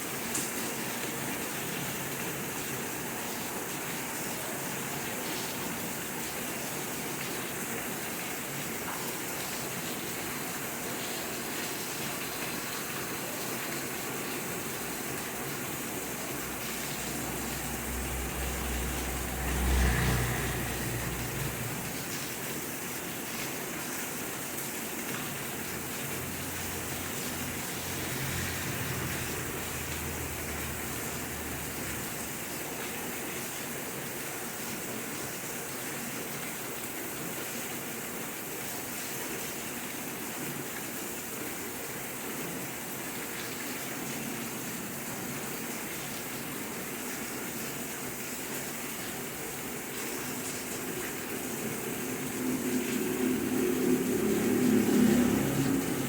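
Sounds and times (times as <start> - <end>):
steady rainfall: 0.0 - 56.0
low rumble: 17.2 - 22.2.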